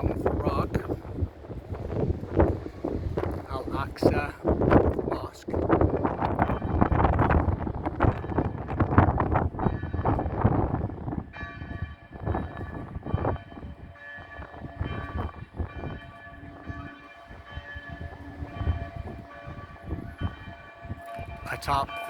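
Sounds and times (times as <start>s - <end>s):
church bells ringing: 0.0s - 22.0s
wind buffeting microphone: 0.0s - 22.0s.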